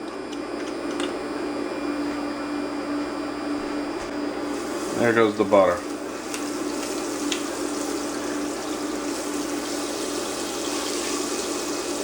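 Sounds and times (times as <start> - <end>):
butter sizzling in oil: 4.5 - 5.0, 5.8 - 12.0.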